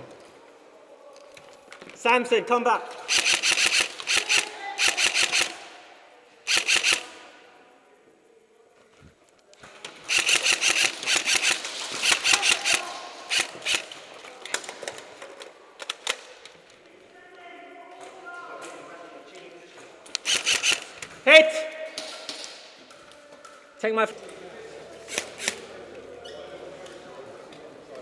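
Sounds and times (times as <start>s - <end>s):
airsoft guns firing bursts: 3.0s - 5.8s, 6.5s - 7.2s, 9.9s - 14.9s, 20.2s - 21.1s.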